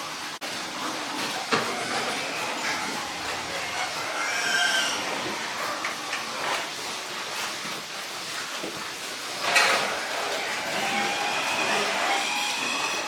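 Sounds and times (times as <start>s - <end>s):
pigs squealing: 0.6s - 6.8s, 9.3s - 13.0s.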